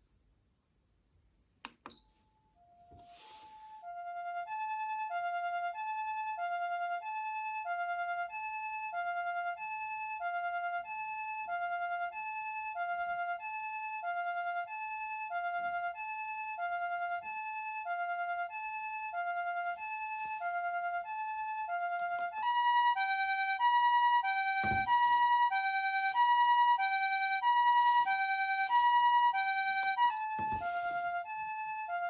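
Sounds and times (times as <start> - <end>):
two-tone ambulance siren: 21.7 - 31.2.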